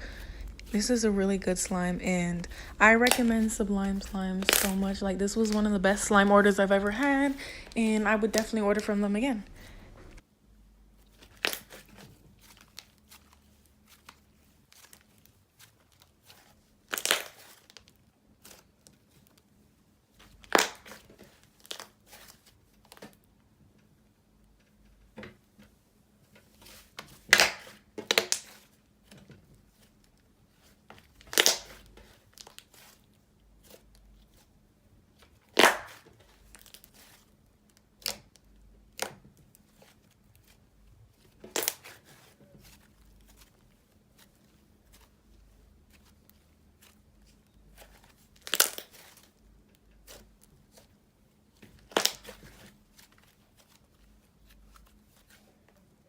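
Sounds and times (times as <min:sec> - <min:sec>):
slime squished by hand: 0:31.0 - 0:33.0, 0:35.4 - 0:37.2.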